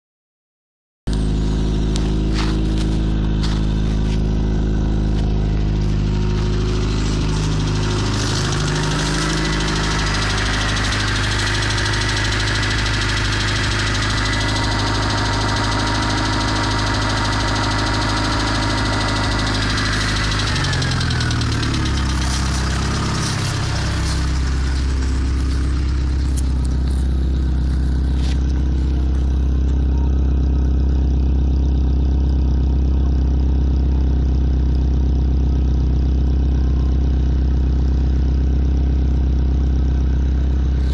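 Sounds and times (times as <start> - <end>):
car engine rattling clatter: 1.1 - 40.9.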